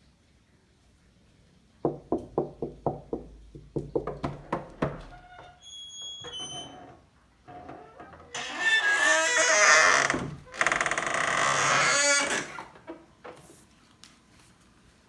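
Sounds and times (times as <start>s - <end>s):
child knocking on a door: 1.8s - 5.2s.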